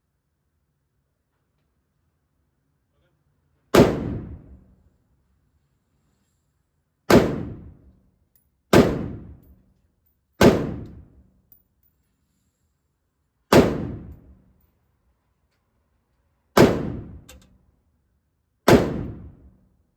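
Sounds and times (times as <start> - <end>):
gunshots: 3.8 - 4.6, 7.1 - 7.8, 8.7 - 9.4, 10.4 - 11.1, 13.5 - 14.3, 16.6 - 17.3, 18.7 - 19.4.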